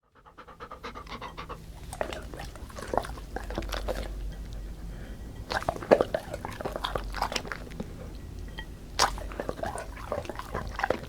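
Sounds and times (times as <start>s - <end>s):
dog panting: 0.0s - 8.1s, 9.0s - 11.0s.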